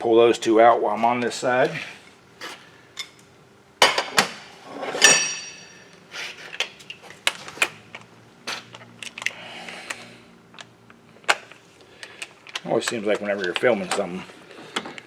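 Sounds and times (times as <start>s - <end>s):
tools clanking against metal: 4.9s - 5.8s
sharp ringing metallic clank: 5.0s - 5.8s.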